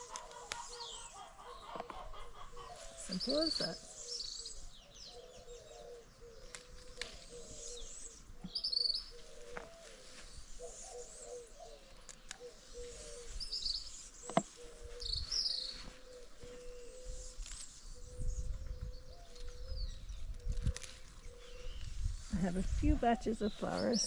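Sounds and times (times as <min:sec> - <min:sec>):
small birds chirping: 0:00.0 - 0:24.0.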